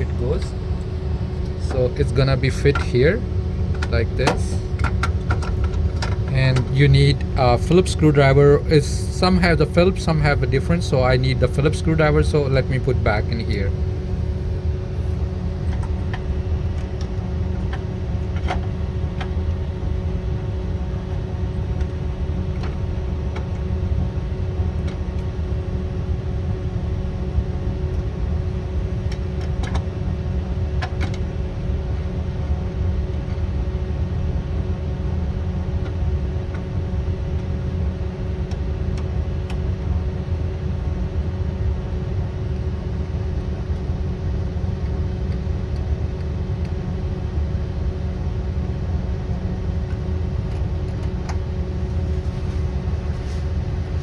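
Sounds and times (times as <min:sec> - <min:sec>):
constant hum: 0:00.0 - 0:54.0.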